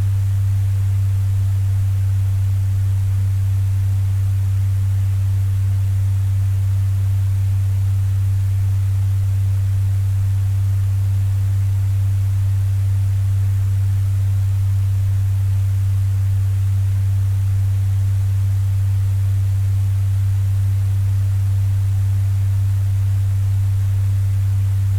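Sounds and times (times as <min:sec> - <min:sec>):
electric fan humming: 0:22.8 - 0:24.9.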